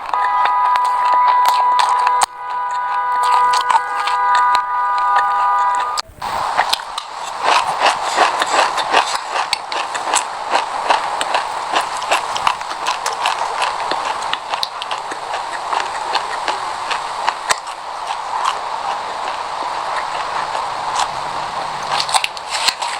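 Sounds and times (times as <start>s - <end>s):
chewing crunchy seeds: 0.0s - 22.9s.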